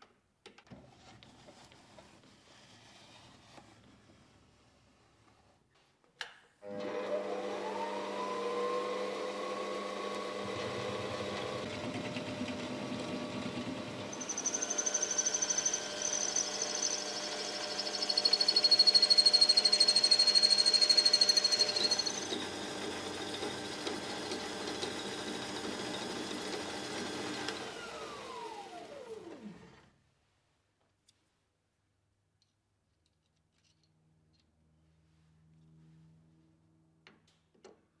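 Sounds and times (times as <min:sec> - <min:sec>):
electric motor whining: 0:06.7 - 0:29.6.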